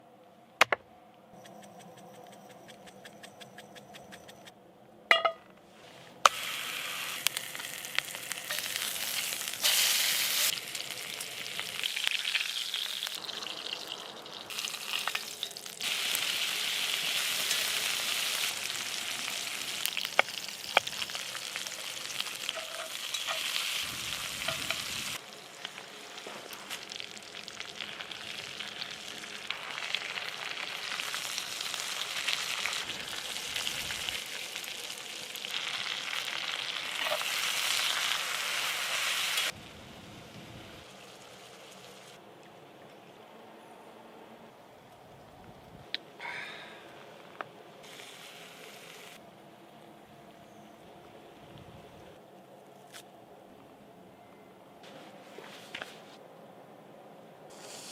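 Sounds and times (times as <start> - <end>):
pork sizzling in a skillet: 6.3 - 39.6, 47.9 - 49.2, 57.5 - 57.9.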